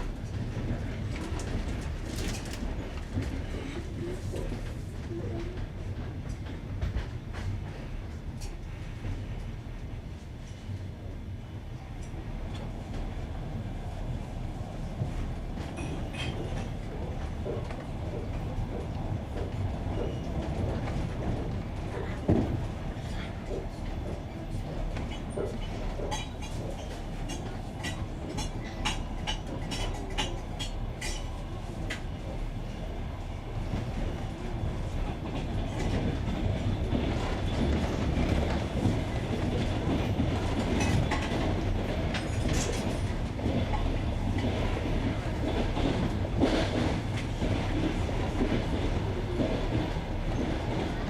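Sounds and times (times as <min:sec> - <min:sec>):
train wheels clattering over rails: 0:00.0 - 0:10.8, 0:14.9 - 0:51.0
train running rumble: 0:00.0 - 0:51.0.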